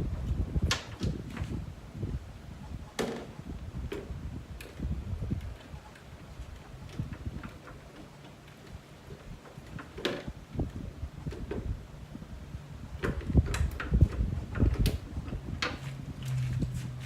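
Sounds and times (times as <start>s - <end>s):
knocks and clatter of tools: 6.9s - 10.4s.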